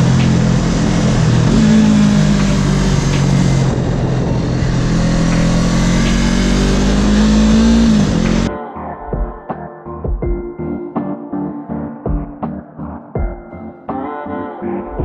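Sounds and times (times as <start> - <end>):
motorcycle engine running: 0.0 - 8.5.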